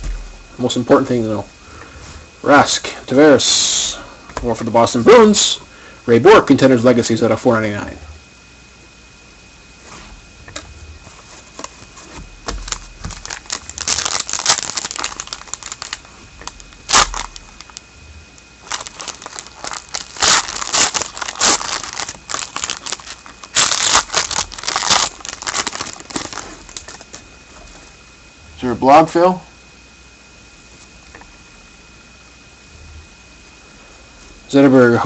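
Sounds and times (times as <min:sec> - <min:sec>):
plastic wrapper crinkling and tearing: 0:12.5 - 0:17.8, 0:18.6 - 0:27.2.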